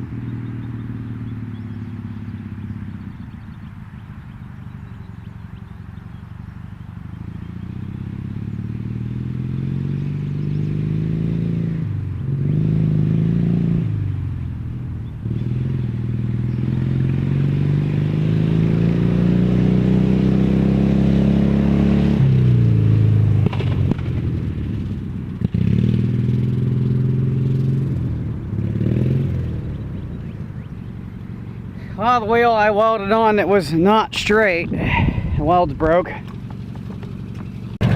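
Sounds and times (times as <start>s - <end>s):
lawn tractor engine revving: 15.2s - 29.8s, 31.7s - 37.9s.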